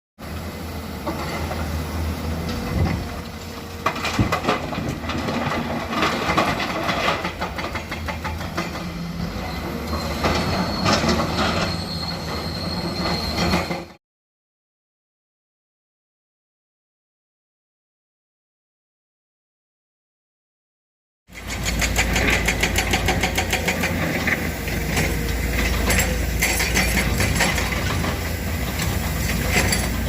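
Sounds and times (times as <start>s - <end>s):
excavator engine drone: 0.2s - 13.6s, 21.3s - 30.0s
high squeal: 9.0s - 14.0s
metallic clanks and clatter: 21.4s - 30.0s.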